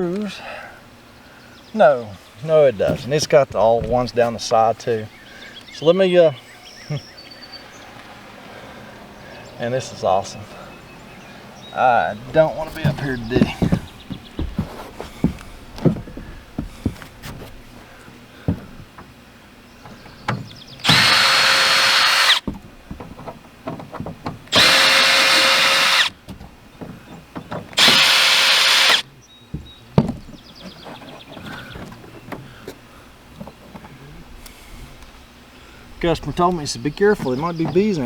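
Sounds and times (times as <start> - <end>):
power drill whining: 12.0 - 14.6, 20.8 - 22.5, 24.5 - 26.2, 27.8 - 29.1.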